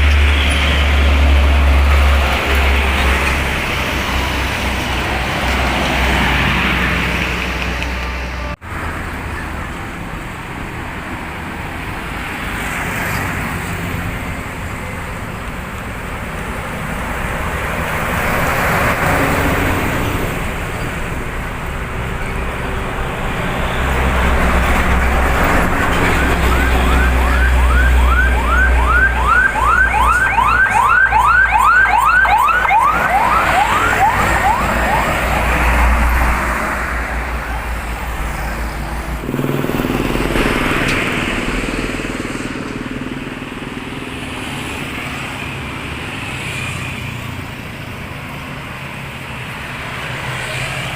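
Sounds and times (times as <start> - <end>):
vehicles passing on road: 0.0 - 50.9
siren yelping: 25.9 - 35.8
deep engine rumble: 38.2 - 44.1.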